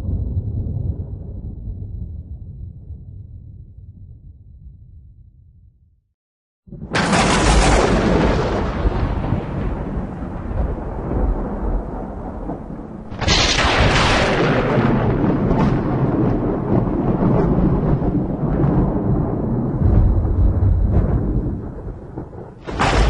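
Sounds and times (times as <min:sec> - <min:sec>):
thunder rumbling: 0:00.0 - 0:05.1, 0:06.7 - 0:23.0
sharp thunderclap: 0:06.7 - 0:23.0.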